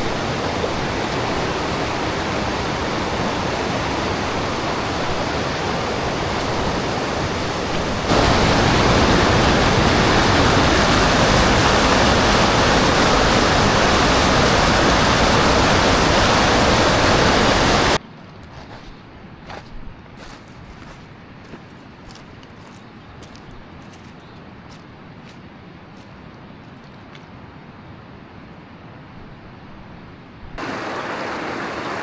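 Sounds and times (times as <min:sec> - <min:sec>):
waterfall roaring: 0:00.0 - 0:18.0, 0:30.6 - 0:32.0.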